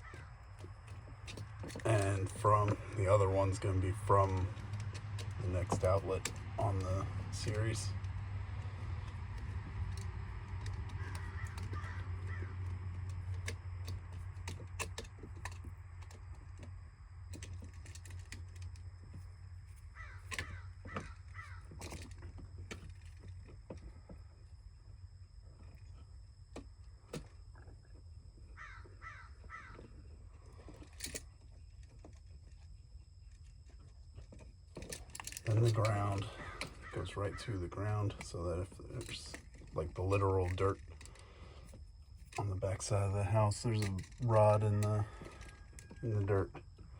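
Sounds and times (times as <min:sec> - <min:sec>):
crow cawing: 0:00.0 - 0:00.3, 0:11.0 - 0:12.7, 0:20.0 - 0:21.8, 0:28.6 - 0:29.9, 0:36.3 - 0:37.0
low steady hum: 0:00.0 - 0:46.9.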